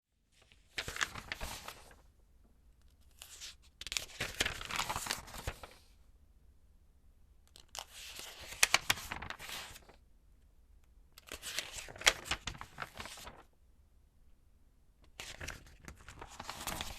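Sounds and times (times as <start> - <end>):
magazine pages turning: 0.4 - 2.0, 2.9 - 5.8, 7.5 - 10.0, 11.2 - 13.5, 15.1 - 16.9.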